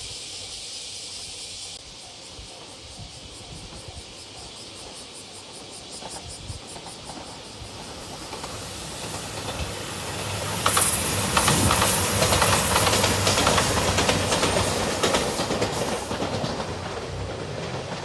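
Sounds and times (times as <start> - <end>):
diesel train passing: 0.0 - 18.0
wheels clattering over rail joints: 6.0 - 18.0.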